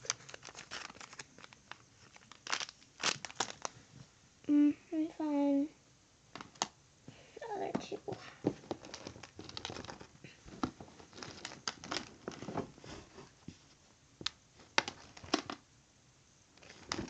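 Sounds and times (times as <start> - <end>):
plastic rustling and crinkling: 0.0 - 4.0, 7.7 - 15.6, 16.6 - 17.0.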